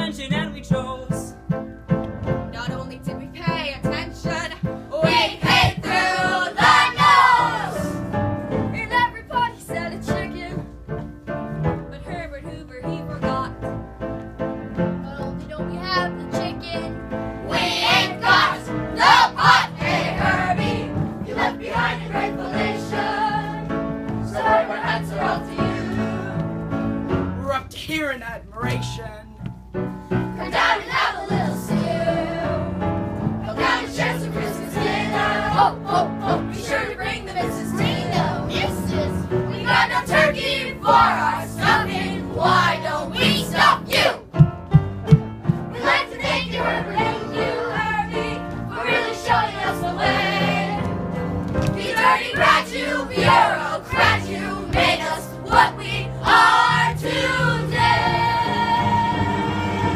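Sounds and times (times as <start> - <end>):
musical accompaniment: 0.0 - 59.9
group of voices singing: 4.9 - 8.0, 17.5 - 26.6, 30.4 - 44.2, 45.8 - 51.0, 51.8 - 59.9.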